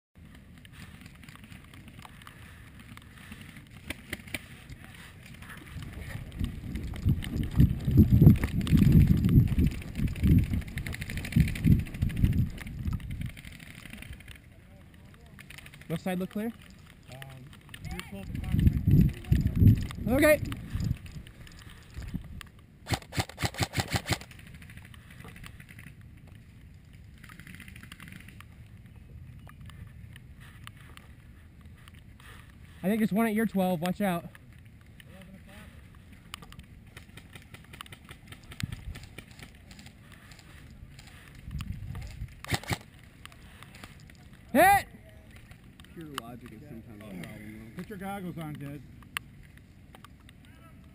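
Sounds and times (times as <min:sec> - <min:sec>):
wind rumbling on microphone: 0:00.2 - 0:14.4, 0:17.7 - 0:25.9, 0:35.7 - 0:43.6
outdoor background noise: 0:00.2 - 0:50.9
airsoft gun shots: 0:22.8 - 0:24.3, 0:42.5 - 0:42.9
faint clicks: 0:45.2 - 0:50.9.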